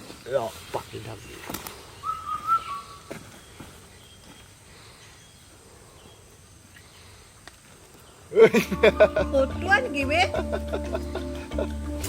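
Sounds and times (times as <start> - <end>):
faint outdoor ambience: 0.0 - 12.0
short whistled note: 2.0 - 3.0.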